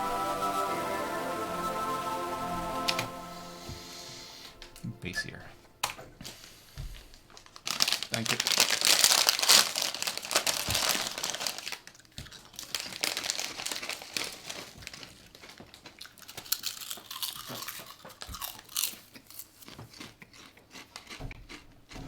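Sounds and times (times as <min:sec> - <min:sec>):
crisps crunching: 0:07.0 - 0:21.7
crisp packet crinkling: 0:07.1 - 0:19.7.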